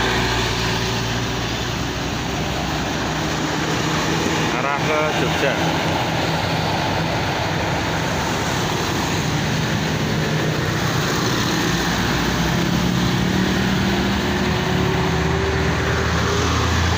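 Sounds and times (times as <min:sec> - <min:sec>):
large bus engine running: 0:00.0 - 0:16.9
passing traffic: 0:00.0 - 0:16.9.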